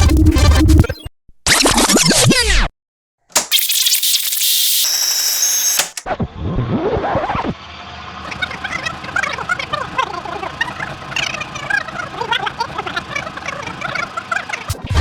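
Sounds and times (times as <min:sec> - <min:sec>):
cassette tape rewinding chatter: 0:03.4 - 0:06.0, 0:08.3 - 0:15.0.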